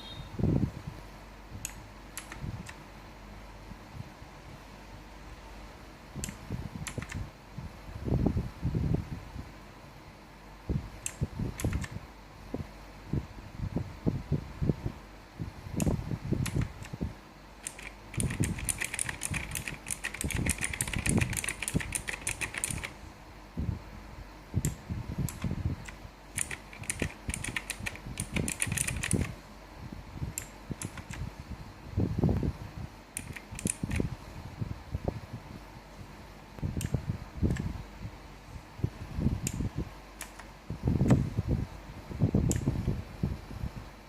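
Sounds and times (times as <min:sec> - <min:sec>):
clicky keyboard typing: 0:01.6 - 0:02.8, 0:06.2 - 0:07.2, 0:11.1 - 0:12.0, 0:15.8 - 0:17.0, 0:17.6 - 0:23.0, 0:24.6 - 0:29.3, 0:30.4 - 0:31.2, 0:33.2 - 0:34.1, 0:40.2 - 0:40.5.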